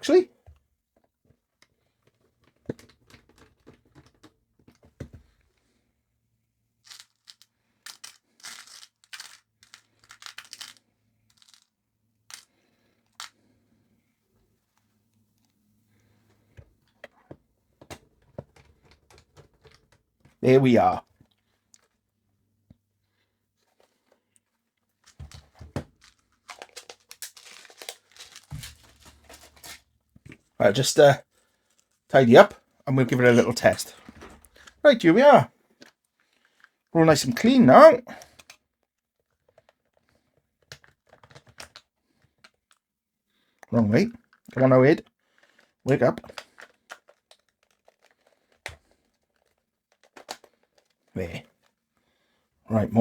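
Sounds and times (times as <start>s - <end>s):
rustling crinkling bursts: 6.8s - 11.7s, 25.0s - 37.4s, 45.2s - 52.2s
small screws clicking and tapping: 6.9s - 11.7s, 25.1s - 29.5s.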